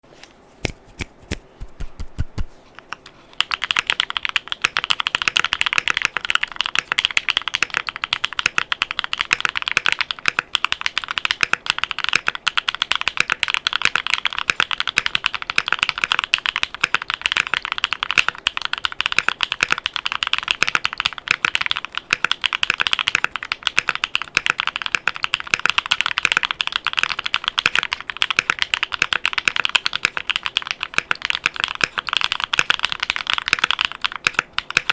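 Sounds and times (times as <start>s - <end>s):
mechanical keyboard typing: 3.3s - 34.9s.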